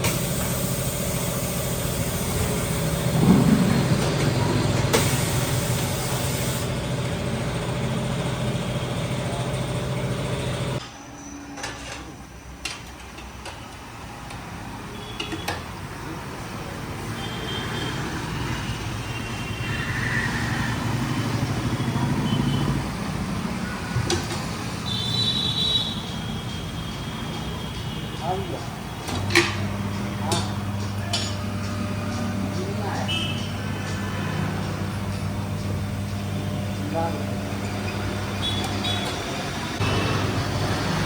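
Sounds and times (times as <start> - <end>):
vehicle engine running: 0.0 - 10.8, 29.2 - 41.0
street noise: 0.0 - 41.0
passing engine: 2.9 - 5.1, 29.4 - 41.0.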